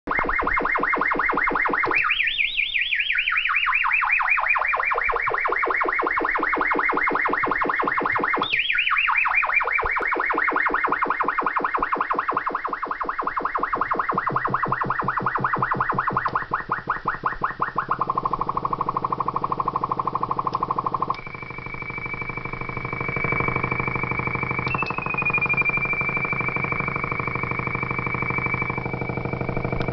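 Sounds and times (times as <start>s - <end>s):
buzzy pulsing synthesized tone: 14.1s - 29.9s.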